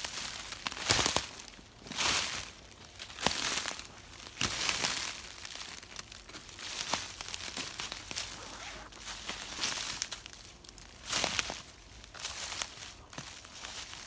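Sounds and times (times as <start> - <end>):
footsteps crunching through frozen leaves: 0.0 - 14.0.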